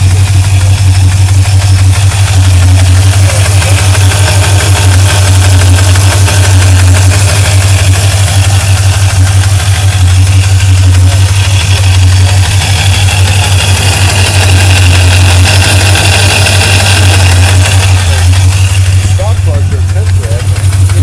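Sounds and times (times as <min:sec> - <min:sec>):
engine idling: 0:00.0 - 0:21.0
fast even ticking: 0:00.0 - 0:21.0.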